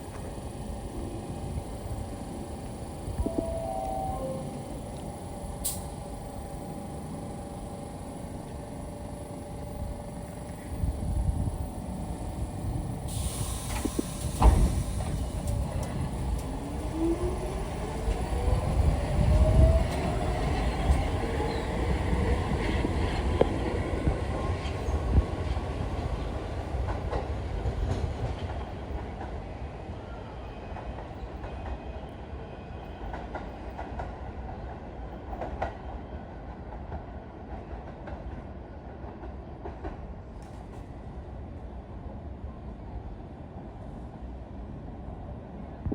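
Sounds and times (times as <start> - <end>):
subway train motor whine: 0.0 - 34.5.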